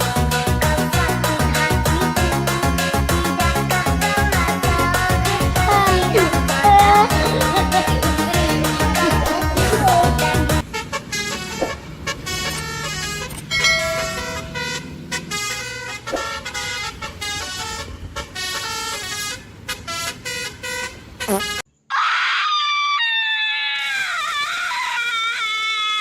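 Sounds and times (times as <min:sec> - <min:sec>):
upbeat music: 0:00.0 - 0:10.6, 0:12.5 - 0:14.8
loud multi-tone horn: 0:00.0 - 0:21.6.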